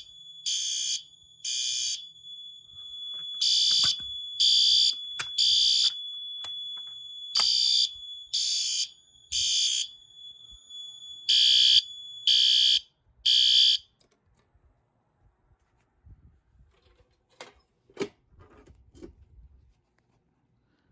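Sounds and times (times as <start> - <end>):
fire alarm horn blasts: 0.0 - 13.9.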